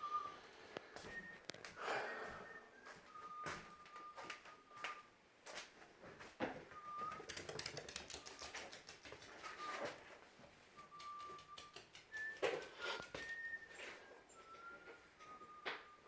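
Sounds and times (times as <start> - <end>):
bird rapid clicking: 7.1 - 9.8, 10.9 - 13.3
bird whistling: 10.8 - 16.0.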